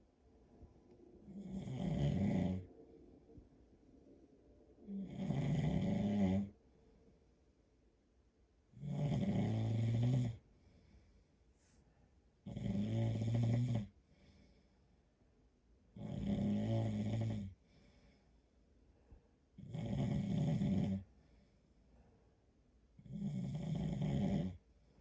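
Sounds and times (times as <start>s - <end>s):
man snoring: 1.3s - 2.7s, 4.9s - 6.5s, 8.8s - 10.4s, 12.5s - 13.9s, 16.0s - 17.6s, 19.6s - 21.1s, 23.0s - 24.6s.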